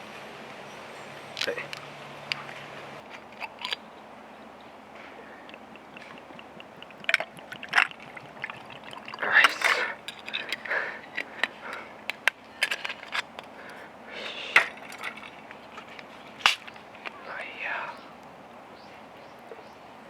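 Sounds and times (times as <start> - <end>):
drink pouring into glass: 5.3 - 11.8.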